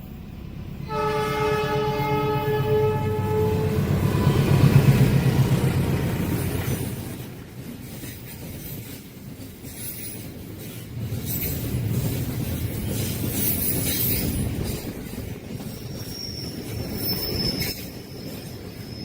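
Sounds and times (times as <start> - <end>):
low rumble of train: 0.0 - 19.0
train horn: 0.8 - 4.6.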